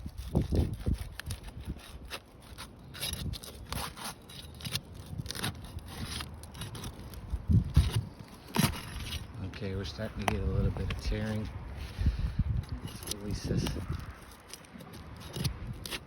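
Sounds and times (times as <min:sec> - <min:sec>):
roof shingles scraping and crackling: 0:00.0 - 0:16.0.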